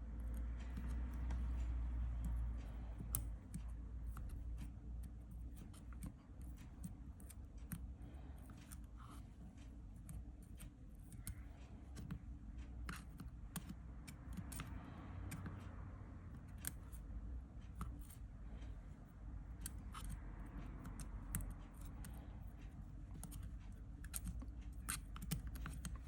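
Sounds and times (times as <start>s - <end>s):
small tool clicking and scraping: 0.1s - 17.0s, 17.6s - 26.0s.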